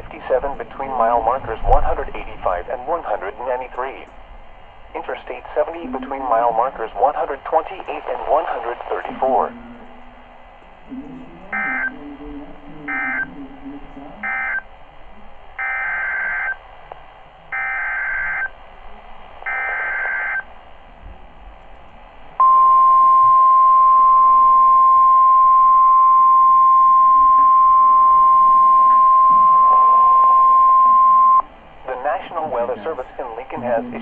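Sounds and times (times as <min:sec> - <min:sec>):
steady warning alarm tone: 0:09.3 - 0:14.8, 0:15.5 - 0:16.6, 0:17.5 - 0:18.6, 0:19.4 - 0:20.5, 0:22.4 - 0:31.5
digital header tone bursts: 0:11.5 - 0:14.6, 0:15.6 - 0:16.6.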